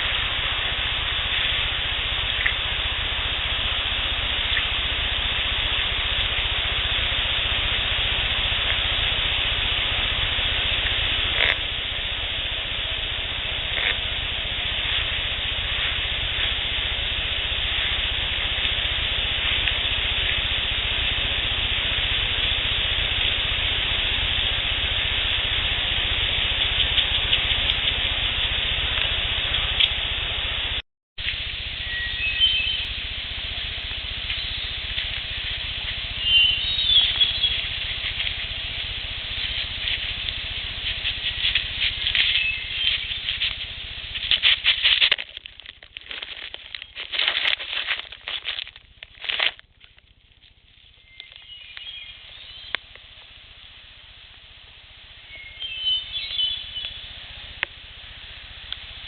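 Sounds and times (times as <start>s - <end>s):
steady hiss: 0.0s - 59.0s
short bird chirps: 31.8s - 32.9s, 36.2s - 37.7s, 42.2s - 43.3s, 55.3s - 57.0s
scratching or rustling: 33.6s - 51.4s.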